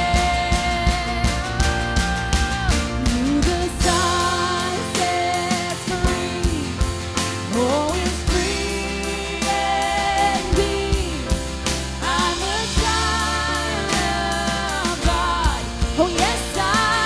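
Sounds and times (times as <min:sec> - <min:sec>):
voices singing held notes: 0:00.0 - 0:17.0
worship band playing: 0:00.0 - 0:17.0.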